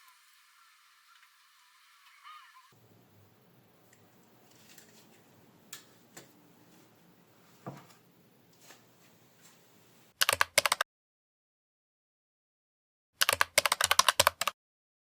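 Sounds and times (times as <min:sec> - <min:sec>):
faint steady hiss: 0:00.0 - 0:07.4.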